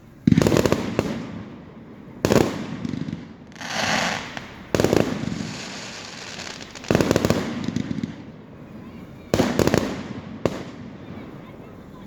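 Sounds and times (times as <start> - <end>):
fireworks crackling: 0.0 - 12.0
firework hissing whoosh: 3.5 - 8.1.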